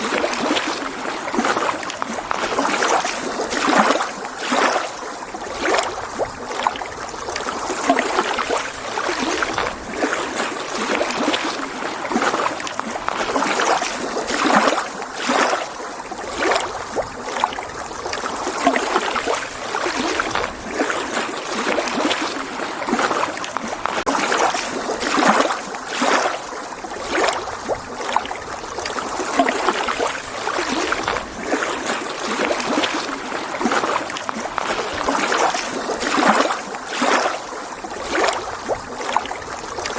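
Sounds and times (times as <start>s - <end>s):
lake waves lapping against shore: 0.0s - 39.9s.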